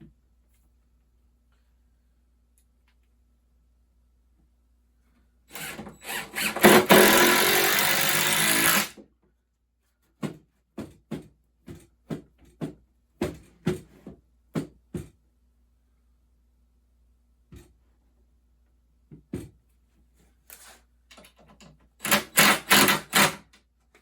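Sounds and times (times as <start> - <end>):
power drill running: 5.5 - 8.9, 22.0 - 23.4.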